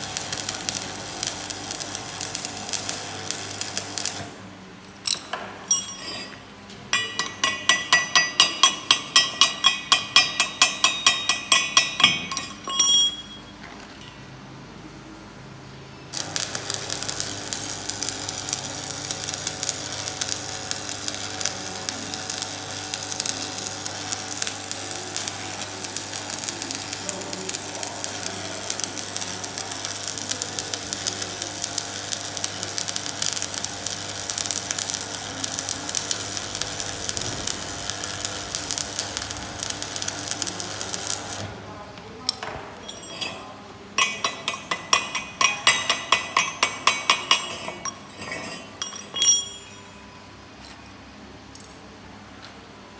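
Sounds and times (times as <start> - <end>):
electric arc welding crackle: 0.0 - 4.4, 16.2 - 41.7
ringing taps on metal: 5.1 - 6.3, 6.9 - 13.5, 42.4 - 48.1, 48.8 - 50.0.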